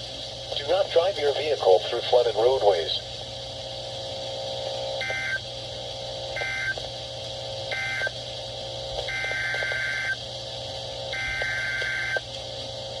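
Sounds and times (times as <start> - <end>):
screeching data bursts: 9.1 - 10.2, 11.2 - 12.2.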